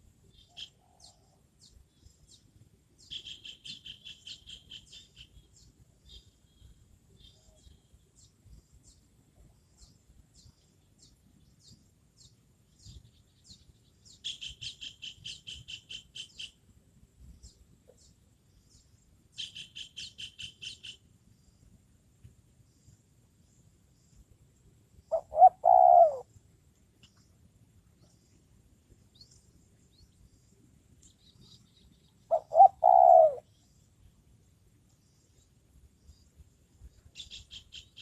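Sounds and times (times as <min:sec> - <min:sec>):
small bird chirping: 0:00.3 - 0:16.6, 0:17.4 - 0:21.0, 0:29.0 - 0:34.0, 0:34.9 - 0:38.0.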